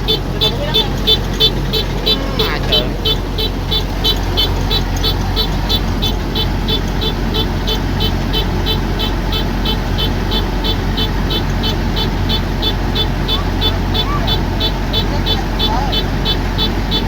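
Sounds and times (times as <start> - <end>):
high-pitched pulsing: 0.0 - 16.0
combine harvester running: 0.0 - 17.0.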